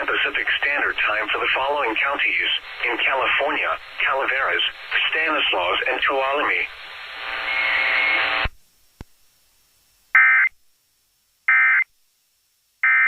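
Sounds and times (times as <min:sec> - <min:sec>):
radio hiss: 0:00.0 - 0:08.6.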